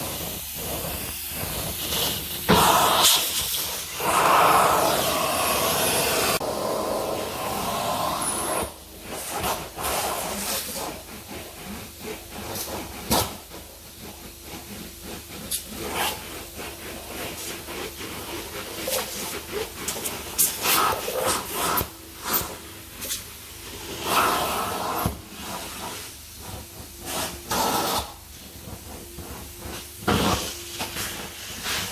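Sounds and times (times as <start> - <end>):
spray hiss: 0.0 - 6.4
wiping and rubbing plastic: 0.0 - 31.9.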